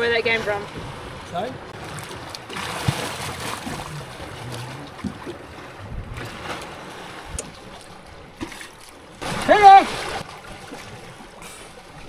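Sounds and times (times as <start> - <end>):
water lapping against hull: 0.0 - 12.0
wind on microphone: 1.8 - 8.3.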